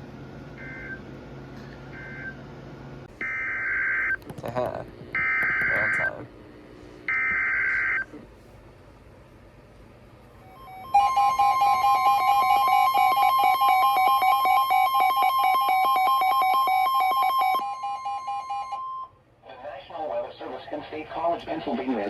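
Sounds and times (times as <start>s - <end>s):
two-tone attention signal: 10.6s - 19.1s.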